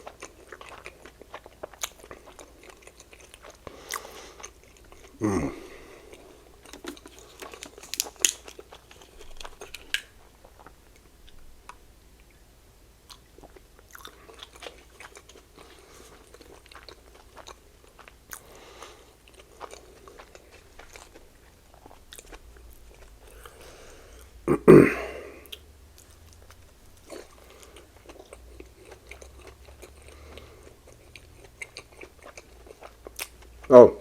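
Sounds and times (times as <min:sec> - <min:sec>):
person chewing close to microphone: 0:00.0 - 0:12.4, 0:13.0 - 0:24.4, 0:25.4 - 0:33.7
wet crackly mouth sounds: 0:00.0 - 0:12.4, 0:24.2 - 0:33.7.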